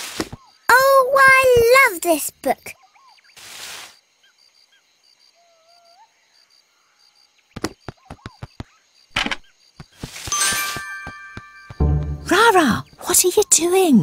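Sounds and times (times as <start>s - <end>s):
faint jungle bird chirps: 2.5s - 3.4s, 4.0s - 9.7s
bright chime-like ringing: 10.3s - 12.6s
sharp clicks or taps: 10.8s - 12.3s.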